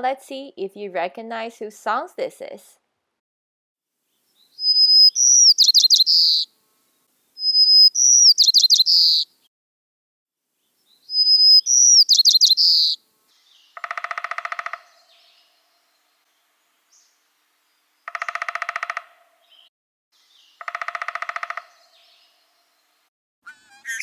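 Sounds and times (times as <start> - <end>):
songbird singing: 4.3 - 6.5, 7.4 - 9.4, 10.8 - 22.8, 23.5 - 24.0
pulsing buzzy bird call: 23.5 - 24.0.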